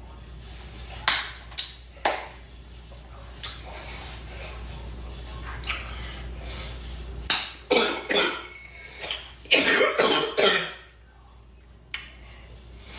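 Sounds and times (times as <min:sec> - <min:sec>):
girl coughing: 0:07.7 - 0:08.6, 0:09.5 - 0:10.9.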